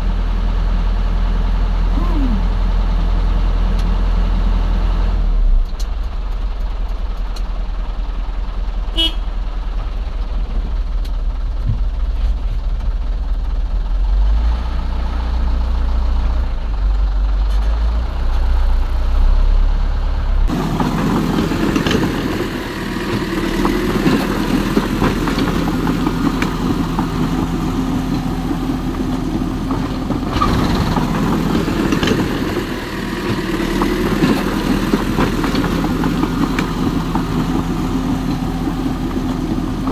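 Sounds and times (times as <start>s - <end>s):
machinery deep low rumble: 4.4s - 39.9s
machine humming and rattling: 20.3s - 39.9s.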